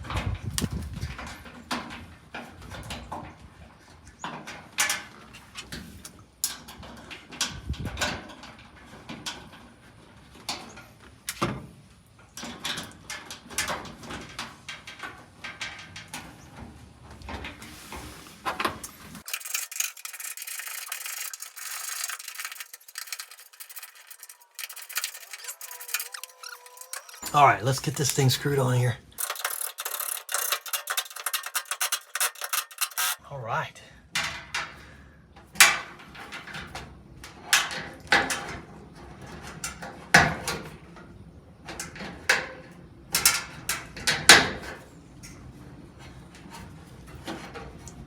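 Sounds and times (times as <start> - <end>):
metal clicks and knocks: 29.2 - 33.2.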